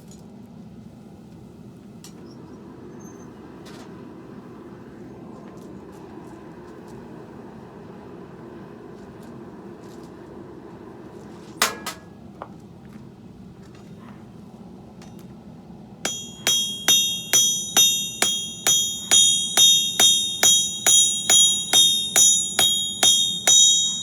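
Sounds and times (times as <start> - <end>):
low steady hum: 0.0 - 24.0
hammer ringing on anvil: 16.1 - 24.0.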